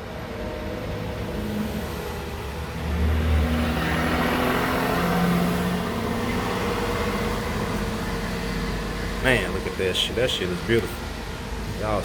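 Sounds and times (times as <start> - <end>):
vehicle engine running: 3.1 - 12.0.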